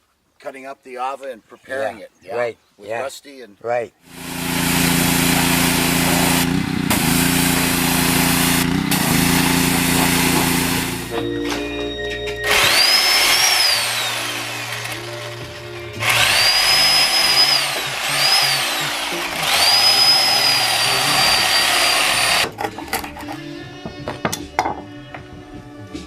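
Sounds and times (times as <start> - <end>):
power tool motor whining: 4.0 - 11.2, 12.4 - 23.1.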